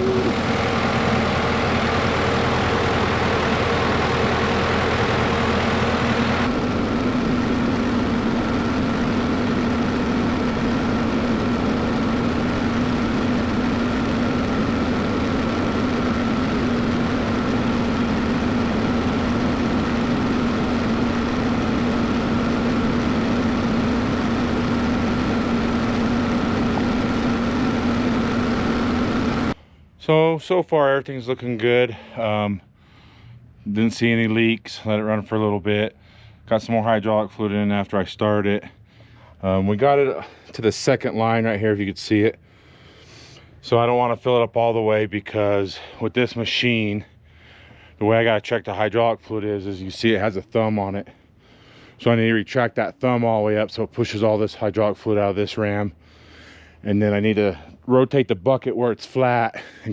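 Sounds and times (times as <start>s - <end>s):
diesel engine idling: 0.0s - 29.6s.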